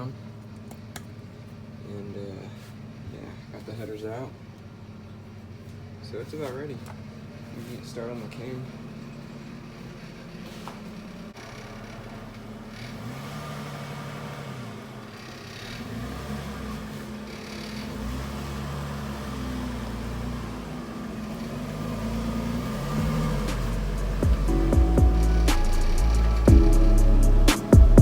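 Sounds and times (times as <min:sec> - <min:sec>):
engine revving up and down: 0:11.4 - 0:28.0.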